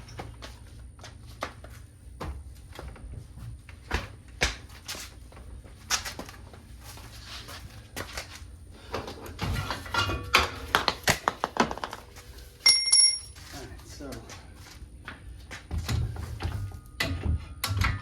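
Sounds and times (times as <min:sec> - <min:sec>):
metal hardware knocking and clinking: 0:12.6 - 0:13.4.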